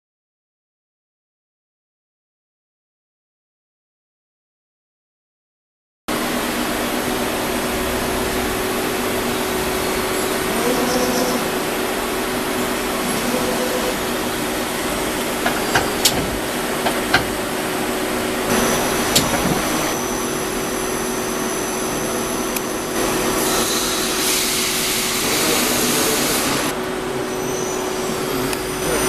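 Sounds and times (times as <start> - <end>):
lathe machine hum and whine: 6.1 - 29.0.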